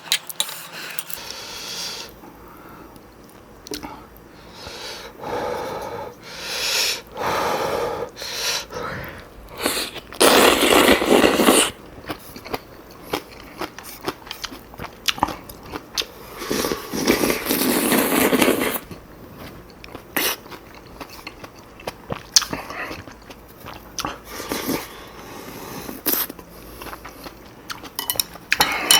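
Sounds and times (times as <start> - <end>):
slurping noodles: 9.6 - 11.8, 16.3 - 18.9.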